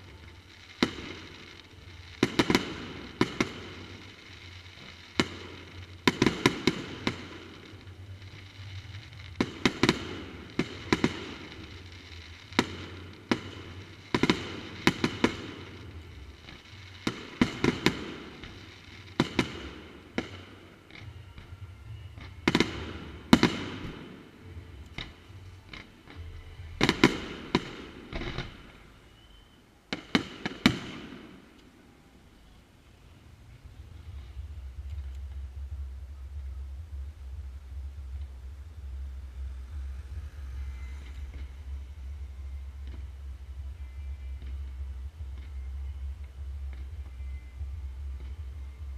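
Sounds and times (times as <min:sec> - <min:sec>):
fireworks bursting: 0:00.0 - 0:48.9
fireworks crackling: 0:00.0 - 0:48.9.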